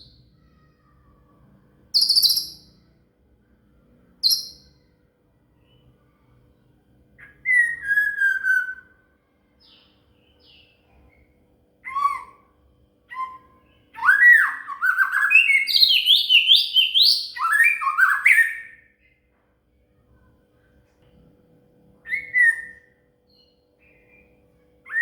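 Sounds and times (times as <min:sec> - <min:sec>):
songbird singing: 0:01.9 - 0:02.9, 0:09.6 - 0:19.2, 0:22.0 - 0:25.0.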